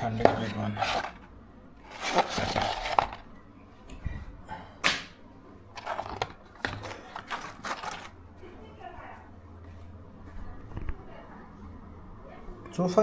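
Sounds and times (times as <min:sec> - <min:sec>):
sharp crack: 0:04.8 - 0:05.2.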